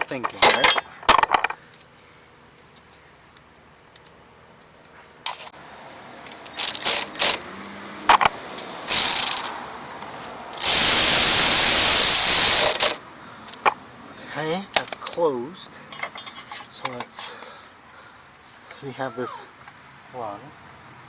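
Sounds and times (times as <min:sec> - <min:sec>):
loud steady hiss: 0:06.5 - 0:07.4, 0:08.8 - 0:09.6, 0:10.5 - 0:13.0
fast-pulsing high whine: 0:10.6 - 0:13.0.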